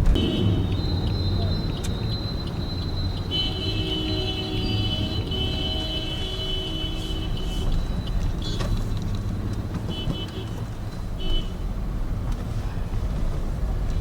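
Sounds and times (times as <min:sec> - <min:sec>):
vehicle horns honking: 0:00.0 - 0:08.8, 0:09.8 - 0:11.6
car driving in traffic: 0:00.0 - 0:14.0.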